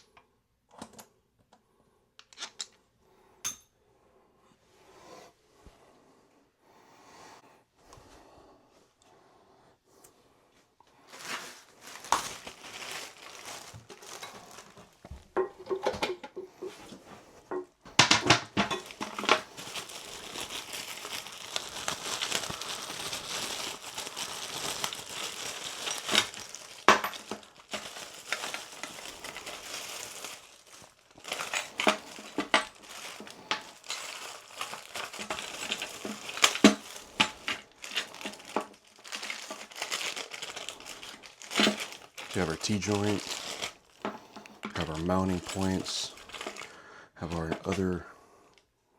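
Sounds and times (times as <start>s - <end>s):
packaging crinkling and rustling: 10.9s - 48.0s.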